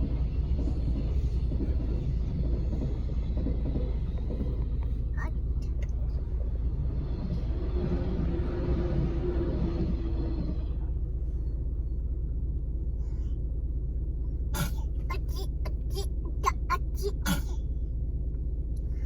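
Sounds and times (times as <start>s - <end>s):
steady low rumble: 0.0s - 19.0s
person making short throat sounds: 14.6s - 14.9s, 17.2s - 17.6s.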